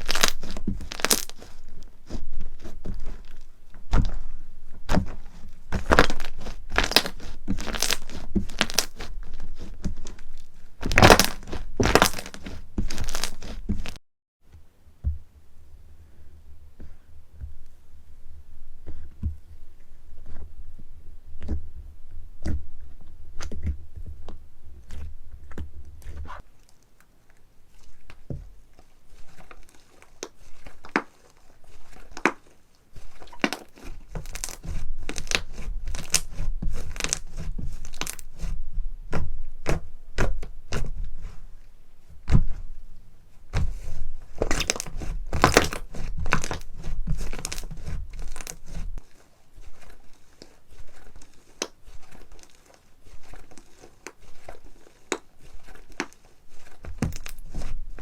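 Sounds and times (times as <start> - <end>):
slime crackling and popping: 0.0 - 3.4, 5.7 - 14.0, 29.3 - 38.3, 44.4 - 48.9, 49.7 - 58.0.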